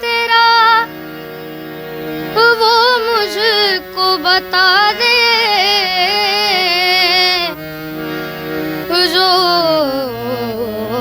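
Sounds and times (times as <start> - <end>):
boy singing: 0.0 - 1.0, 2.2 - 7.7, 8.8 - 11.0
held accompanying notes: 0.0 - 11.0.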